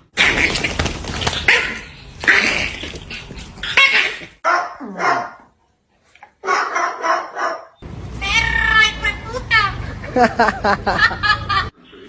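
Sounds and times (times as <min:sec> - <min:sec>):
dog barking: 0:01.4 - 0:01.9, 0:04.4 - 0:05.5, 0:06.4 - 0:07.8.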